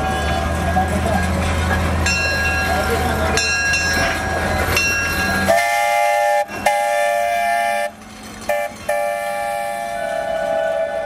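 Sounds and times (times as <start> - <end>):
steam locomotive whistle: 5.4 - 11.0.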